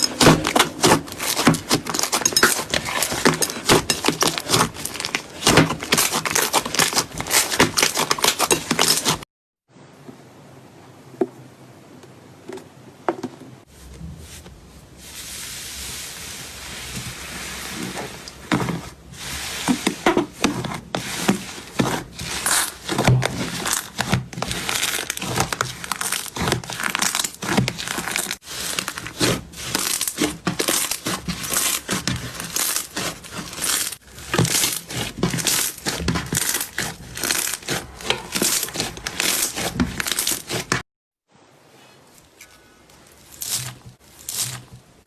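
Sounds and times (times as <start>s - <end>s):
slime crackling and popping: 22.4s - 40.7s.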